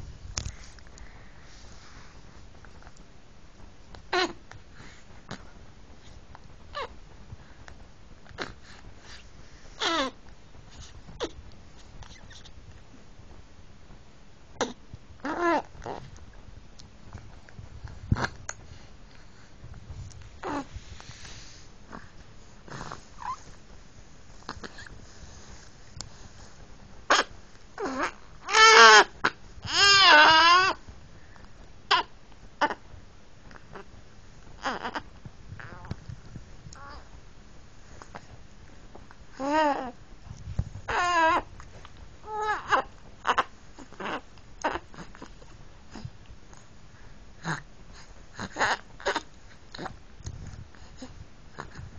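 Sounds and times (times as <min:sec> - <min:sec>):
baby cry-like calls: 0:27.1 - 0:30.8.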